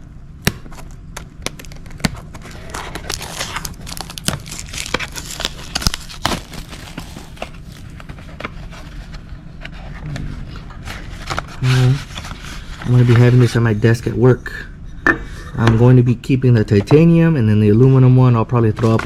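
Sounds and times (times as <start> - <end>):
packaging crinkling and rustling: 0.7 - 10.0.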